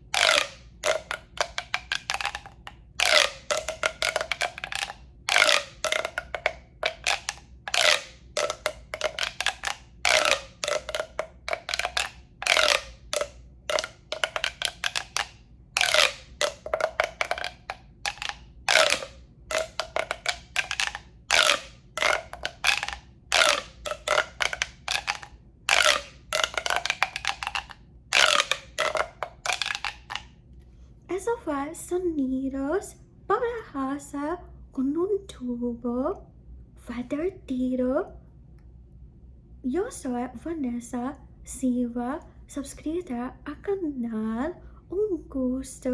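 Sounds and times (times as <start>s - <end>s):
hollow tube tapped and brushed: 0.1s - 30.3s.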